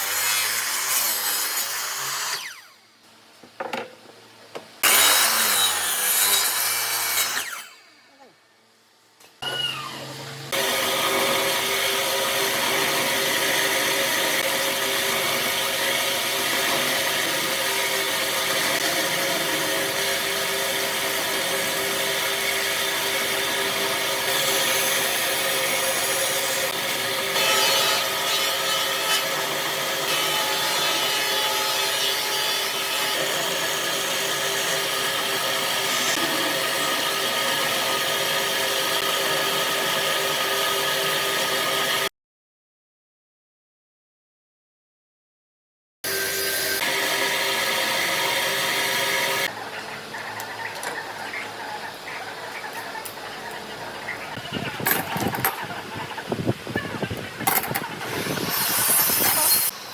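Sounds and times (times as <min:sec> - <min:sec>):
power tool working wood: 0:04.8 - 0:08.1, 0:09.4 - 0:42.1, 0:46.1 - 0:49.6, 0:57.5 - 0:59.9.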